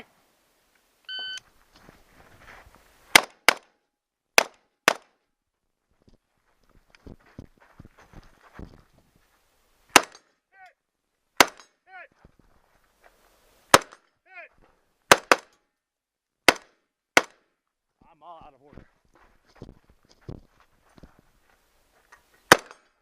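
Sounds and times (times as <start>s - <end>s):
gunshots: 3.1s - 3.7s, 9.9s - 10.2s, 11.4s - 11.7s, 15.1s - 15.5s, 16.5s - 17.4s, 22.5s - 22.8s.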